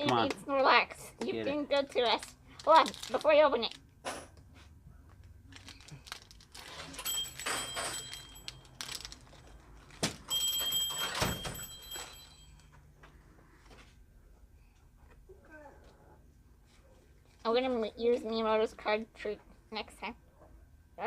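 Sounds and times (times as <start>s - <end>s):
foil pack crinkling and tearing: 2.6s - 3.3s, 5.5s - 7.0s.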